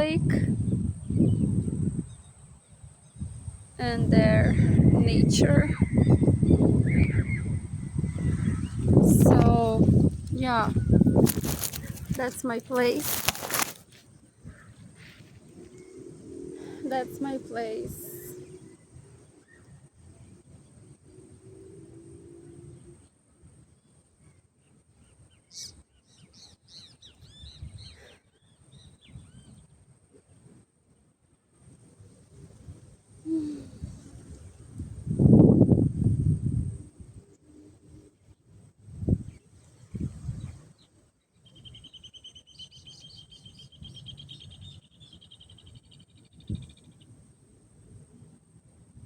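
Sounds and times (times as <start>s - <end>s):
songbird singing whistled notes: 41.4s - 46.9s.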